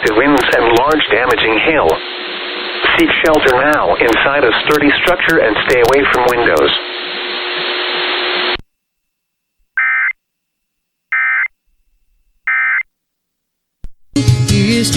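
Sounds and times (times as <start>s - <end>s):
static hiss: 0.0s - 8.6s.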